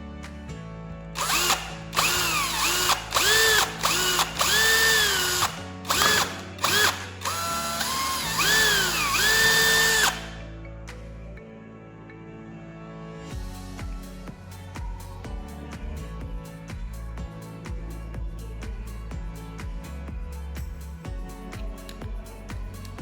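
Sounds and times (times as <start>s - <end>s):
electric drill whine: 1.2s - 10.4s
rough grinding noise: 1.2s - 10.4s.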